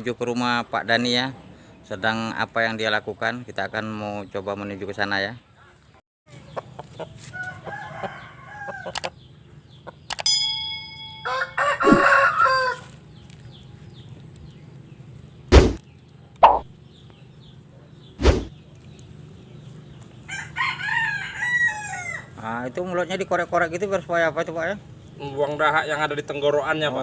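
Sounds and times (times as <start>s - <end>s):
roosters crowing: 6.3s - 9.4s, 10.7s - 13.2s, 20.2s - 22.9s
metallic ding: 10.2s - 12.0s
loud sharp thumps: 15.5s - 16.7s, 18.2s - 18.6s.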